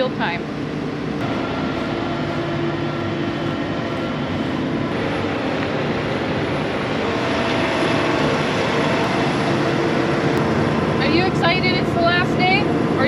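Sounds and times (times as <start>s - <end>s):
harvest machinery engine running: 0.1s - 13.0s.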